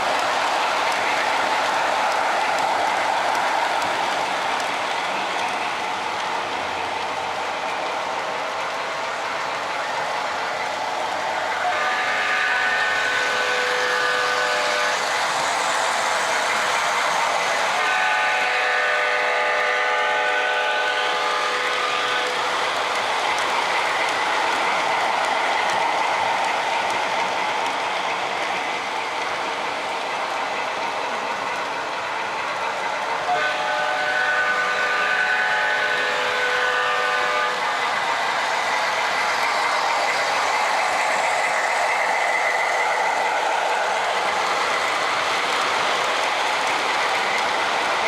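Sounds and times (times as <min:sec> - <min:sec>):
model trains running on track: 0:00.0 - 0:48.0
model locomotive horn blast: 0:11.6 - 0:15.0, 0:17.7 - 0:22.5, 0:33.3 - 0:37.7.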